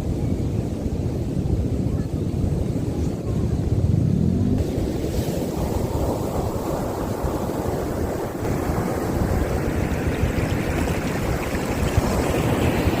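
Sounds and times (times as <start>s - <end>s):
wind buffeting microphone: 0.0s - 13.0s
ocean surf rushing: 4.6s - 13.0s.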